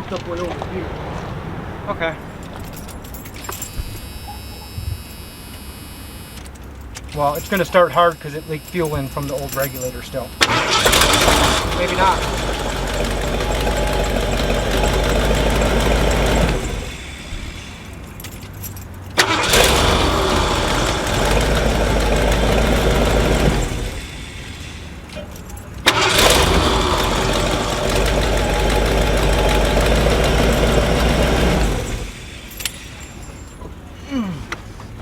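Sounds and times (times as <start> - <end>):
engine cranked by starter: 8.5 - 33.6.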